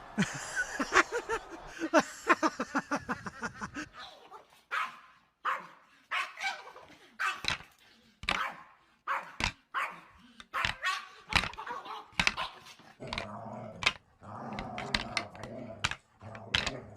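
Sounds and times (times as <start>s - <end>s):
dog barking: 4.0s - 7.6s, 8.3s - 12.8s.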